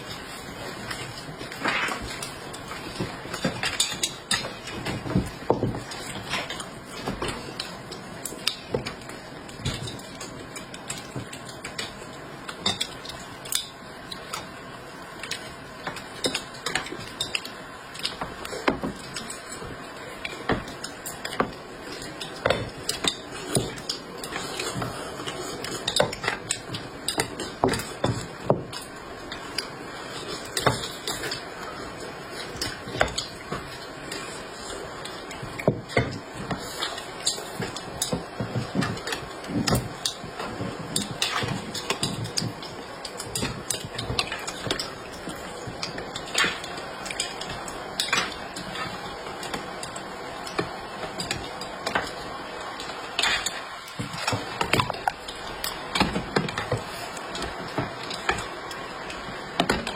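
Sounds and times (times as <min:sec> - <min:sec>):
utensils and dishes clinking: 0:00.0 - 0:59.9.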